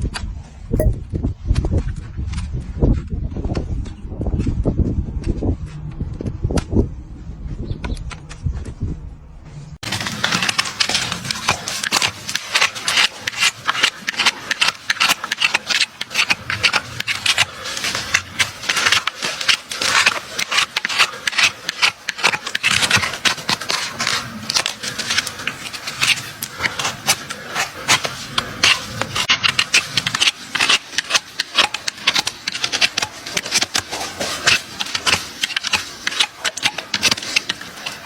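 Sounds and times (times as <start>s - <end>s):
tools scraping on a hoof: 9.5s - 38.0s.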